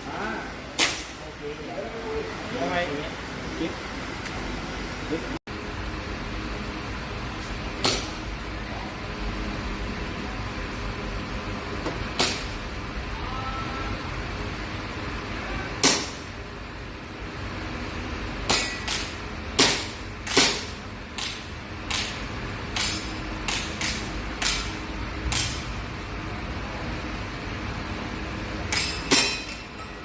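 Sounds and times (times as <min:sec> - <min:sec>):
air gun shots popping: 0:00.8 - 0:01.1, 0:18.5 - 0:22.2.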